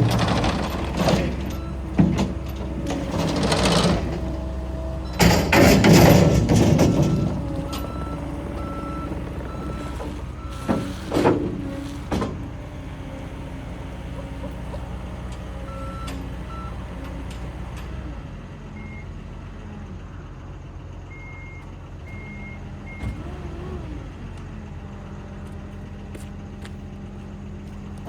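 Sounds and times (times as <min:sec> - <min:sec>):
metallic clanks: 0:00.0 - 0:12.4
diesel engine droning: 0:00.0 - 0:28.0.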